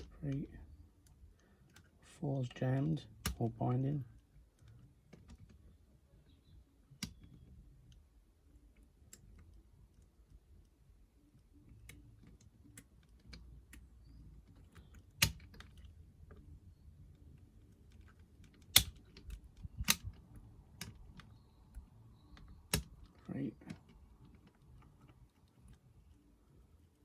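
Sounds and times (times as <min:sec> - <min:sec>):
lock pick metallic clicks: 0:11.4 - 0:16.5, 0:17.1 - 0:26.2.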